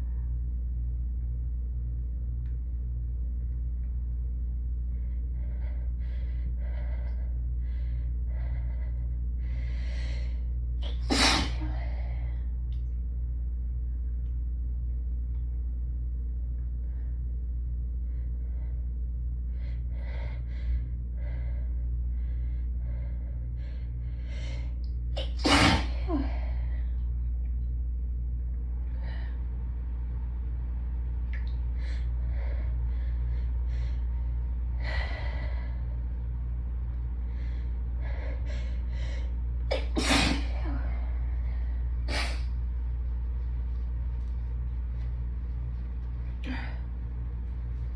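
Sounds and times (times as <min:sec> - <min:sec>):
person sneezing: 0:10.8 - 0:11.6, 0:25.2 - 0:26.1, 0:39.7 - 0:40.6, 0:42.1 - 0:42.4.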